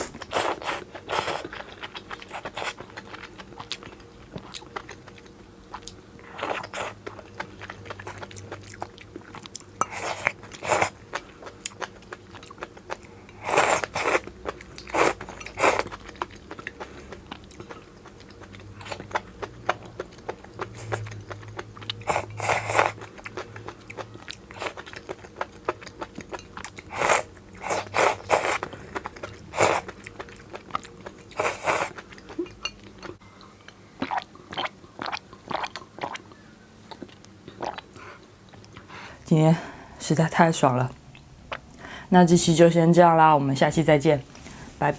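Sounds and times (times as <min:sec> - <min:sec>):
wet mouth sounds: 0:34.0 - 0:36.3, 0:36.9 - 0:38.9.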